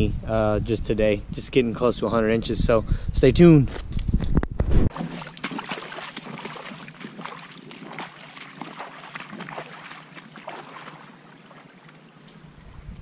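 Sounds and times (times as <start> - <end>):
river water trickling: 4.9 - 12.6.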